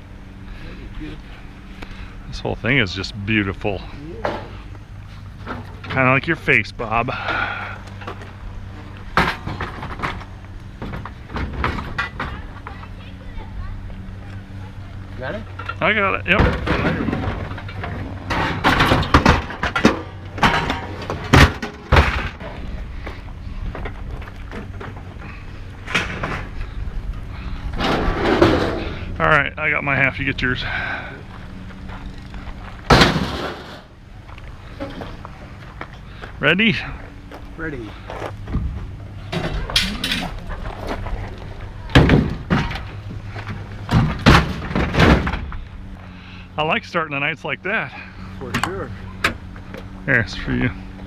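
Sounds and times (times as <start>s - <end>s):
scrap metal clanking and knocking: 9.0s - 12.9s, 15.5s - 23.1s, 27.4s - 29.2s, 32.9s - 33.9s, 38.5s - 45.9s.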